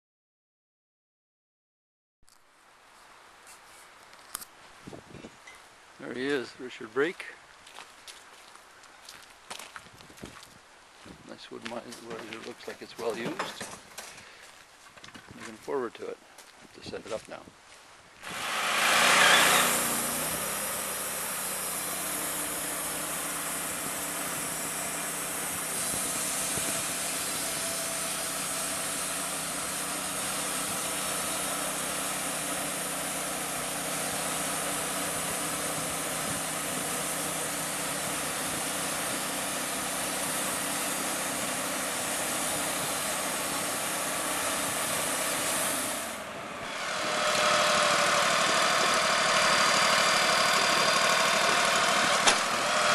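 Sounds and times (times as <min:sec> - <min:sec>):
sawmill engine running: 0:11.7 - 0:13.9, 0:18.2 - 0:52.9.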